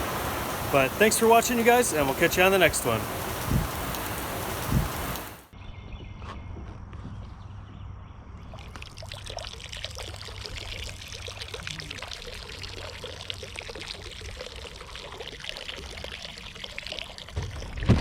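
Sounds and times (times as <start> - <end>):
water splashing and pouring: 0.0 - 5.5, 8.5 - 18.0.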